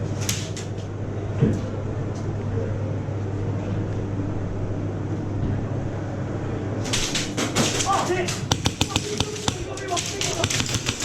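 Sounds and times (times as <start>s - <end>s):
loud knock: 8.5s - 9.6s, 10.4s - 11.0s.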